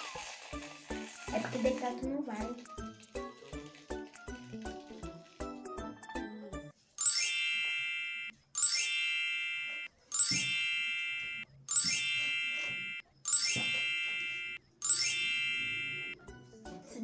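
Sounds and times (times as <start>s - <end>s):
bright bell-like chime: 7.0s - 16.3s.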